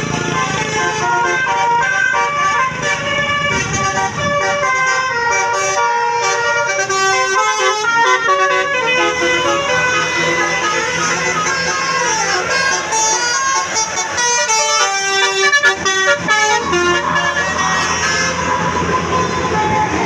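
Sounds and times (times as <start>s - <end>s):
musical bus air horn melody: 0.0s - 19.4s.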